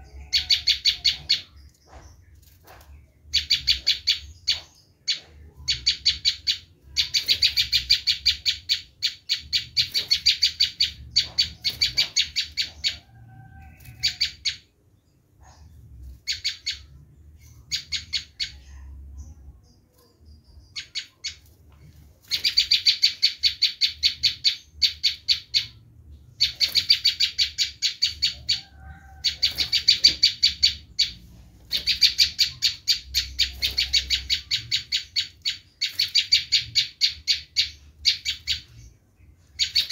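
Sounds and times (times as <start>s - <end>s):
bird harsh rattling calls: 0.0s - 14.7s, 22.2s - 25.8s, 26.4s - 39.9s.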